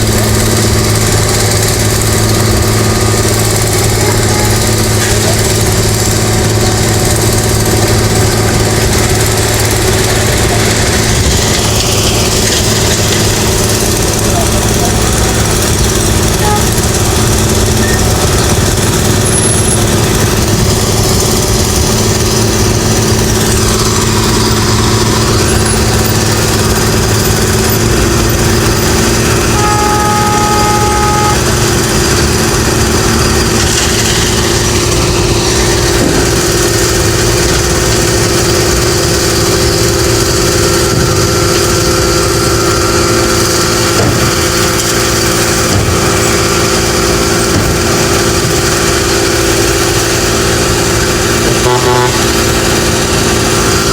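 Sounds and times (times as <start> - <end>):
construction machinery engines: 0.0 - 53.9
traffic: 0.0 - 53.9
horn-like tone: 16.3 - 18.4, 29.2 - 32.2, 51.5 - 52.5.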